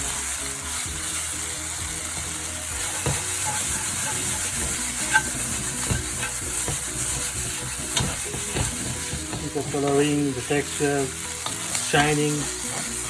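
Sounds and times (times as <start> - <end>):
food sizzling in a pan: 0.0 - 13.0
utensil knocking against pan: 2.9 - 10.2.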